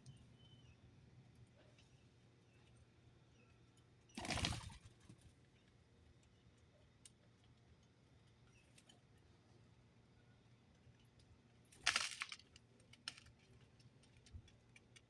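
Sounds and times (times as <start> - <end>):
bird wings flapping: 4.2 - 5.2.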